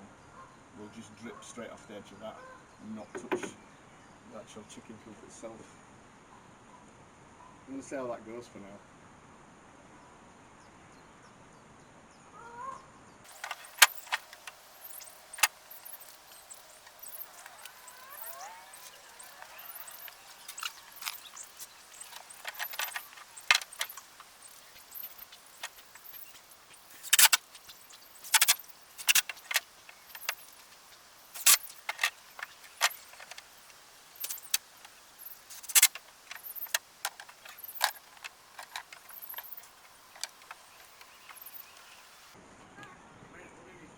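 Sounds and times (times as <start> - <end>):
sharp clicks and knocks: 13.3 - 42.0
faint steady hiss: 13.3 - 43.9.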